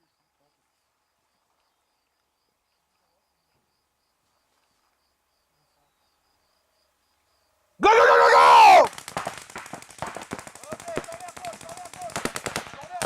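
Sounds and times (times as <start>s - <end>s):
faint insect chirping: 0.0s - 7.8s.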